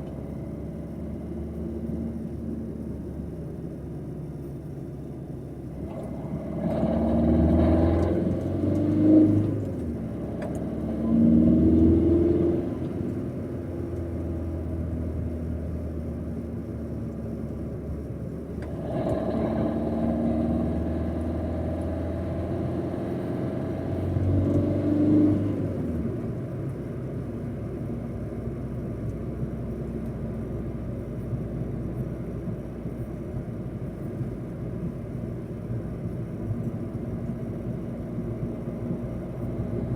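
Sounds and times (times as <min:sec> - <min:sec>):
car engine revving: 0:05.7 - 0:15.4, 0:18.6 - 0:26.2.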